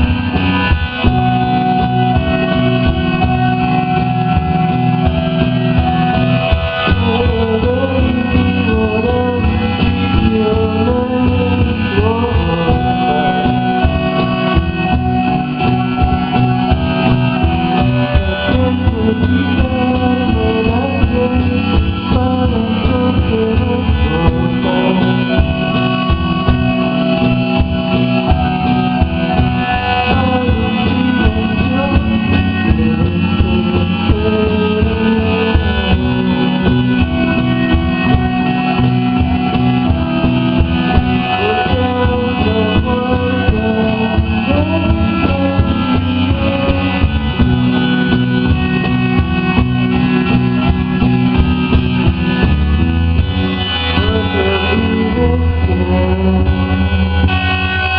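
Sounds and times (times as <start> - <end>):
held bass notes: 0.0 - 57.9
live rock band playing: 0.0 - 57.9.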